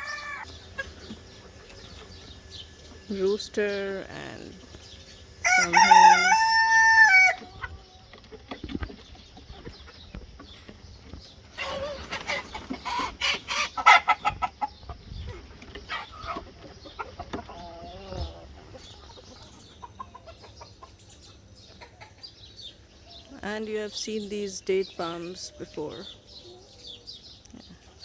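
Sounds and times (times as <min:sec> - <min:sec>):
wavering chicken call: 0:00.0 - 0:00.9
chickens clucking: 0:00.0 - 0:28.0.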